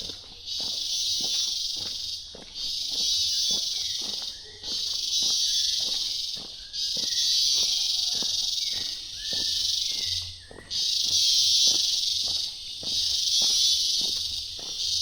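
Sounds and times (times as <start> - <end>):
footsteps on forest floor: 0.0 - 15.0
insects buzzing shrill chorus: 0.0 - 15.0
short bird whistles: 3.0 - 7.9, 8.7 - 11.7.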